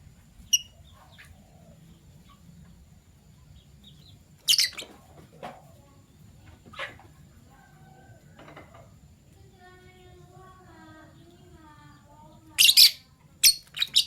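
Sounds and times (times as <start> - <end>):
lovebirds chirping: 0.0 - 7.0, 10.7 - 14.0.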